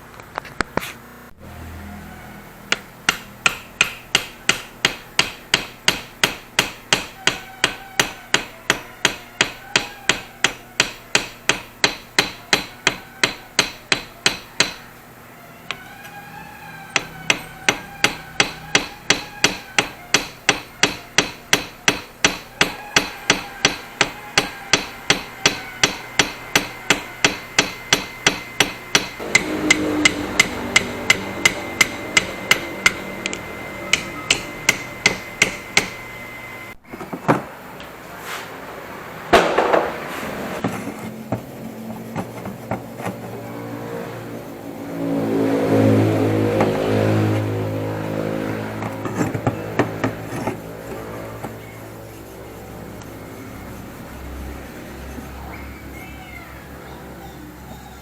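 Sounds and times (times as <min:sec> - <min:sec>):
rapid hammer blows: 0:02.7 - 0:14.9, 0:16.9 - 0:36.4.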